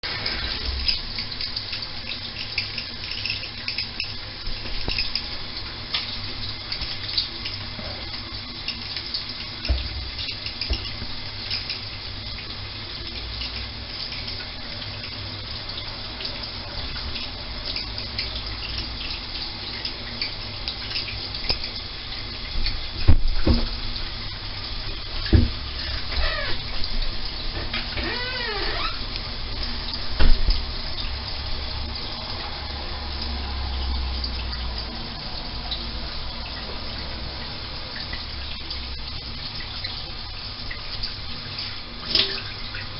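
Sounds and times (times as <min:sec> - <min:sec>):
water spraying from shower head: 0:19.8 - 0:30.3.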